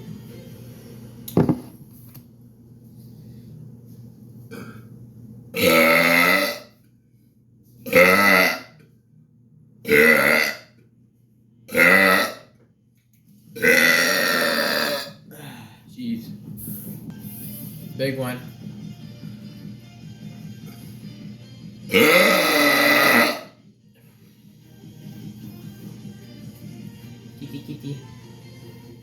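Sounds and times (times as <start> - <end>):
man burping: 5.6 - 6.7, 7.9 - 8.7, 9.8 - 10.6, 11.7 - 12.4, 13.6 - 15.3, 21.9 - 23.5.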